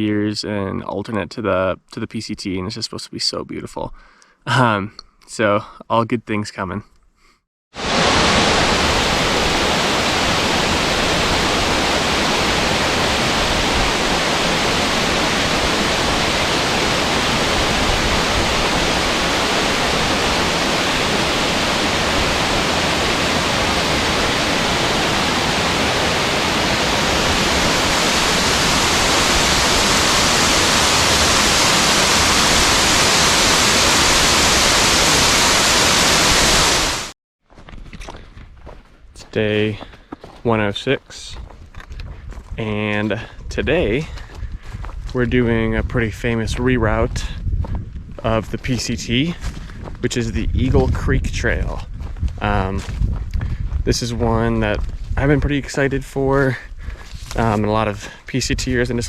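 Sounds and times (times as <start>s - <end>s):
water rushing: 7.8s - 37.1s.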